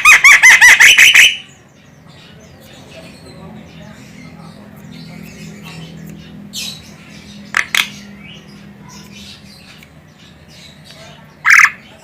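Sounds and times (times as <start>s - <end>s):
bird squawks: 0.0s - 1.6s, 10.6s - 12.0s
bird scratchy chatter: 0.0s - 12.0s.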